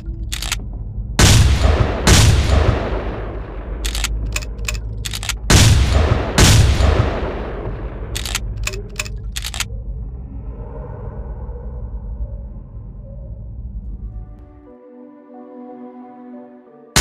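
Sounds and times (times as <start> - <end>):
gun reloading clicks: 0.0 - 0.6, 3.8 - 5.5, 8.2 - 9.7
shotgun blasts echoing: 1.2 - 4.3, 5.1 - 8.6.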